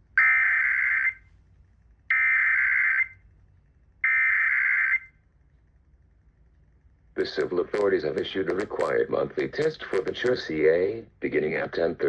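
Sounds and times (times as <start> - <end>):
screeching digital data tones: 0.2 - 1.2, 2.1 - 3.2, 4.0 - 5.1.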